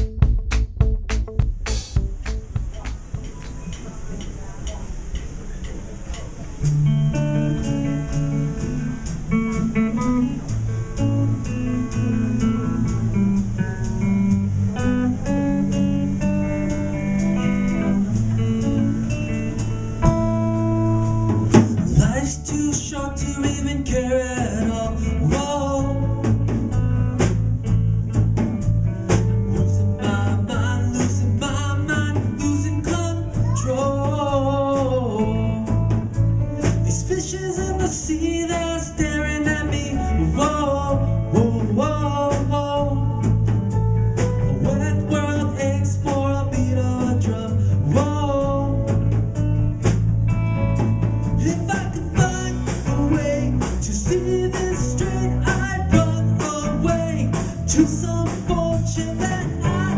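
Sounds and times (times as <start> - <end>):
rock band playing: 0.0 - 3.8, 6.6 - 59.9
person singing: 29.7 - 35.9, 44.6 - 49.2, 51.4 - 59.9.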